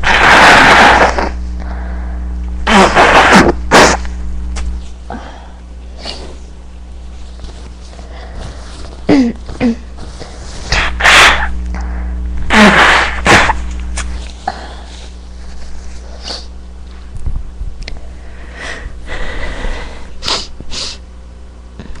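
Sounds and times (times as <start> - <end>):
person sneezing loudly: 2.6 - 4.1, 9.0 - 10.0, 10.7 - 11.6, 12.5 - 13.6
sniffs: 6.0 - 6.5, 10.1 - 15.2, 15.9 - 16.5, 18.5 - 21.0.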